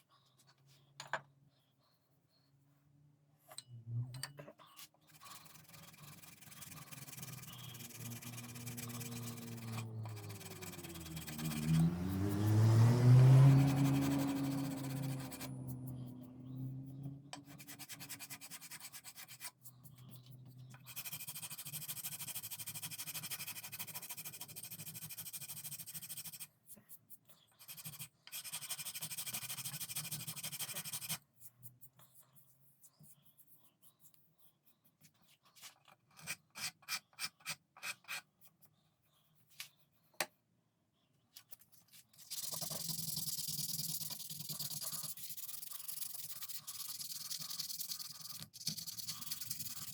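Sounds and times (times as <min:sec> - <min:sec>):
hand sanding rubbing: 0:05.3 - 0:12.7.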